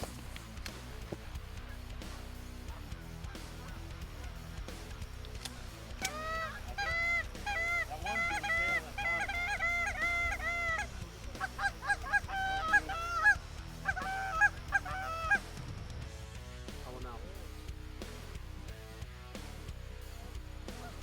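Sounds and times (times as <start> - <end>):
geese honking: 0.0 - 15.6, 20.2 - 21.0.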